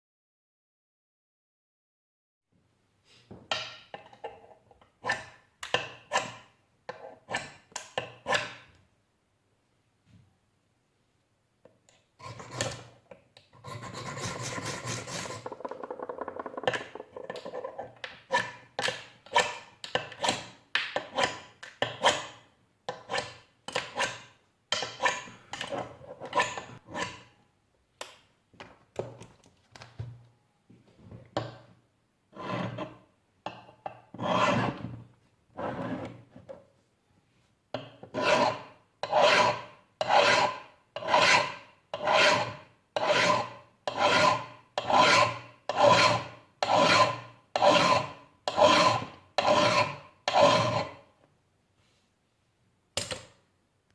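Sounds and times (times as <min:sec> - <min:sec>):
hand file rasping on metal: 0:12.2 - 0:12.9, 0:13.6 - 0:15.6, 0:26.2 - 0:27.3, 0:34.2 - 0:34.8, 0:38.1 - 0:51.0.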